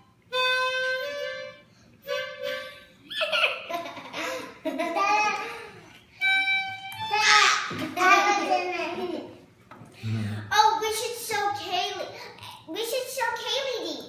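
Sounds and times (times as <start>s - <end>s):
saxophone notes: 0.0s - 3.1s, 6.2s - 7.2s
laughter: 3.1s - 5.8s.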